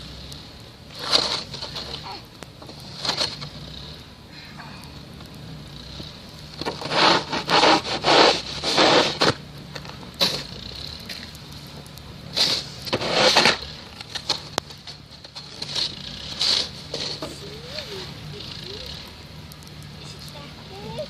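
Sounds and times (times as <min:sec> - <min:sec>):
short scraping sounds: 0:06.6 - 0:09.4, 0:12.3 - 0:14.3.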